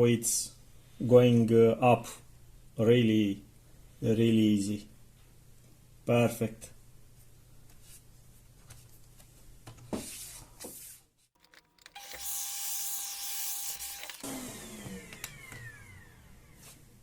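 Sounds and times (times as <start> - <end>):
laptop cooling fan whirring: 13.8 - 17.0.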